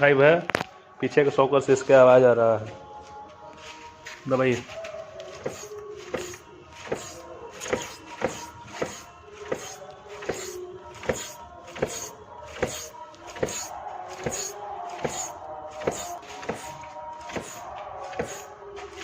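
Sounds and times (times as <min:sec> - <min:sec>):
shock absorber knocking: 0:05.4 - 0:18.5.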